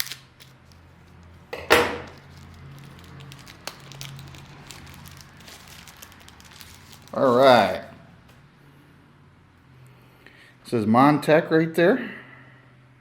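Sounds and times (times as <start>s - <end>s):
plastic packaging clicks and crinkles: 0.0s - 1.4s, 2.0s - 7.3s
plastic packaging rustle: 0.0s - 1.4s, 2.0s - 7.9s.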